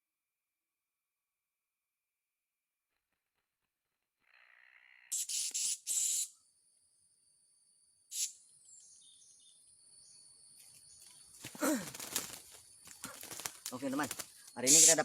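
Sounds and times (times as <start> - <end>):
insects high-pitched buzz: 4.2 - 15.0.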